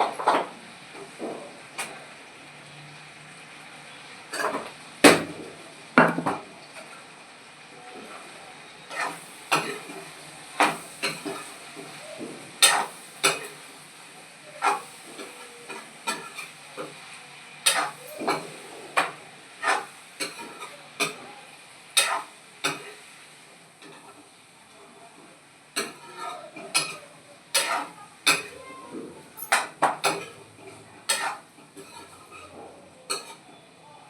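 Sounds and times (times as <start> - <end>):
faint sizzle: 0.0 - 34.0
spoon scraping and knocking a pan: 10.6 - 11.6, 17.7 - 21.2, 22.0 - 23.0, 29.4 - 33.5.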